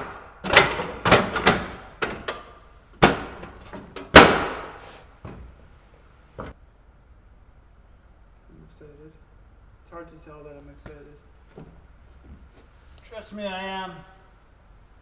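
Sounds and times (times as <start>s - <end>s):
bangs on sheet metal: 0.0s - 5.4s.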